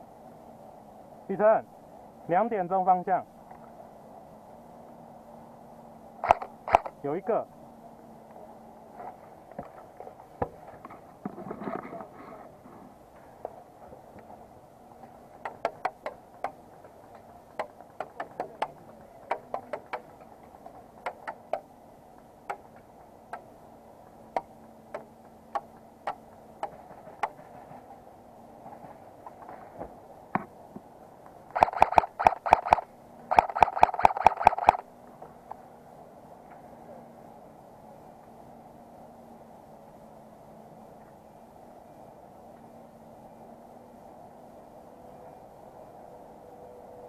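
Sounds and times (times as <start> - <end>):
airsoft gun shots: 31.6 - 34.8.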